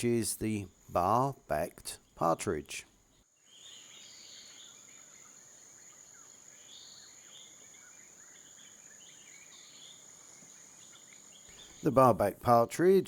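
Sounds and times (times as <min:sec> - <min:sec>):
faint wavering bird calls: 0:02.0 - 0:12.3.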